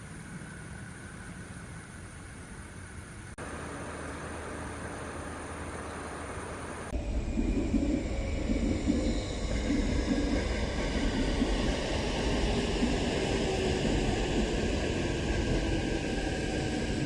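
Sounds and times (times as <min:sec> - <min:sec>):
faint steady tones: 0:00.0 - 0:17.0
train rumbling and clattering: 0:06.8 - 0:17.0.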